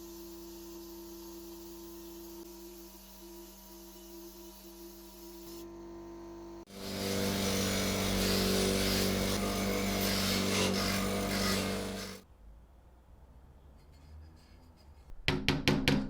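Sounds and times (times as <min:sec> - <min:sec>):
power tool grinding: 0:06.7 - 0:12.2.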